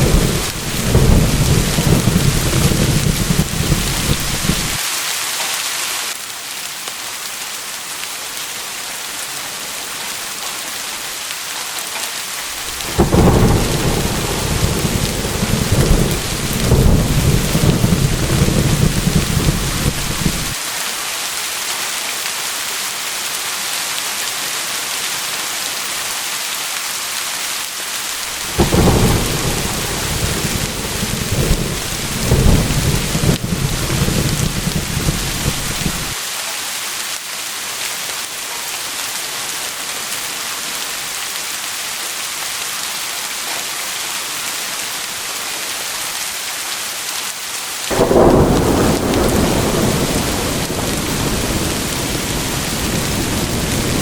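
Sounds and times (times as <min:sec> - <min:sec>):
rolling thunder rumbles: 0:00.0 - 0:04.8, 0:12.5 - 0:20.6, 0:28.2 - 0:36.2, 0:47.9 - 0:54.0
heavy rain hissing: 0:00.0 - 0:26.4, 0:27.3 - 0:43.0, 0:47.6 - 0:54.0.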